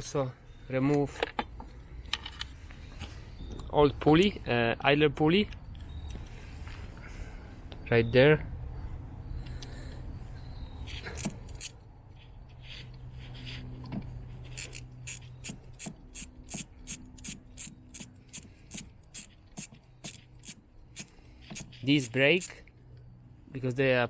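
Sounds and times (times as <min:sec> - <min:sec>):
ratchet wrench clicking: 0:14.4 - 0:22.6.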